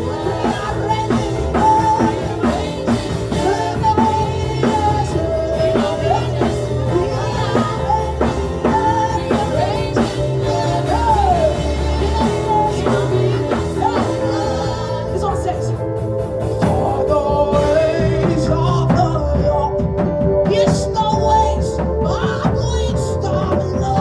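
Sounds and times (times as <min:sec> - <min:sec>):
person singing: 0:00.0 - 0:16.0
drum kit steady beat: 0:00.0 - 0:24.0
sustained bass: 0:00.0 - 0:24.0.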